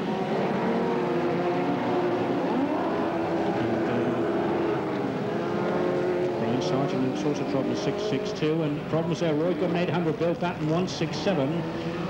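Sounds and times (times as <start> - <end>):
race car engines passing: 0.0 - 12.0.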